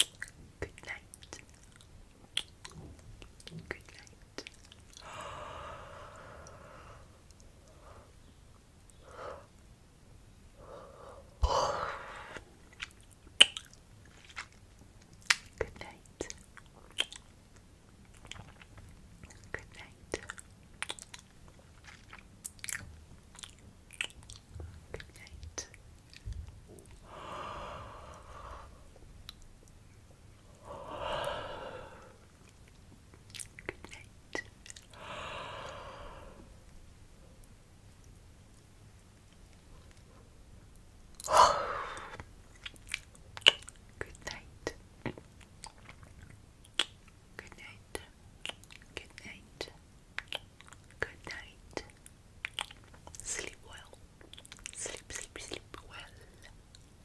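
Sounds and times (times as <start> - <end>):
wet mouth clicks: 0.0 - 5.2, 12.2 - 14.4, 15.1 - 17.3, 18.1 - 21.3, 22.4 - 24.4, 30.5 - 36.0, 41.1 - 56.9
soft breathy sounds: 2.7 - 12.8, 24.5 - 37.6, 39.5 - 42.7, 54.6 - 56.8
breathy yawning: 30.5 - 32.3, 34.9 - 36.6, 41.2 - 42.2.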